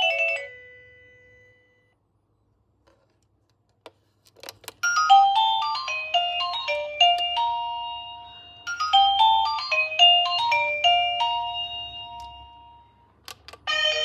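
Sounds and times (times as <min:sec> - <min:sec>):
electronic doorbell chime melody: 0:00.0 - 0:02.0, 0:04.8 - 0:14.0.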